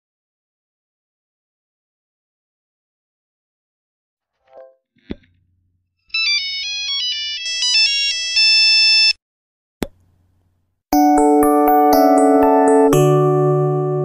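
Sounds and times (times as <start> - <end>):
electronic ringtone melody with chords: 6.2 - 9.1, 11.0 - 14.0
phone ringtone jingle: 6.2 - 9.2, 11.0 - 14.0.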